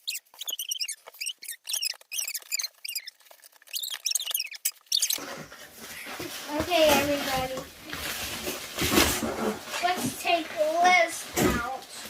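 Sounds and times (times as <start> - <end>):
high-pitched squeaks and chirps: 0.0 - 5.4.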